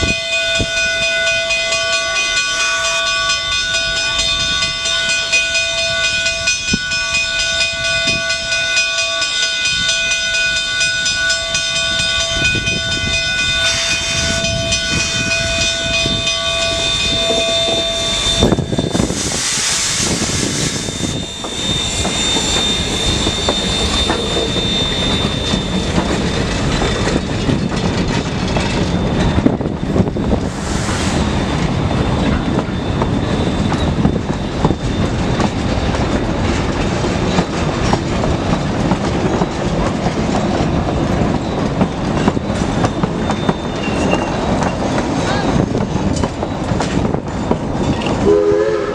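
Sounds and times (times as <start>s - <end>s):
steady multi-pitch ringing tone: 0.3s - 19.2s, 20.5s - 30.4s, 41.3s - 46.8s
train wheels clattering over rails: 7.8s - 48.3s
loud hiss: 13.6s - 14.6s, 16.7s - 26.0s, 30.4s - 32.1s.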